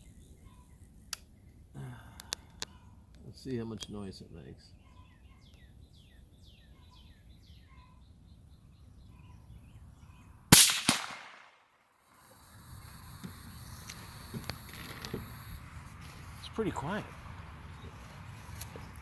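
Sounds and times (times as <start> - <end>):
small birds chirping: 0.0 - 10.5, 12.9 - 19.0
suppressed rifle shot: 10.5 - 11.6.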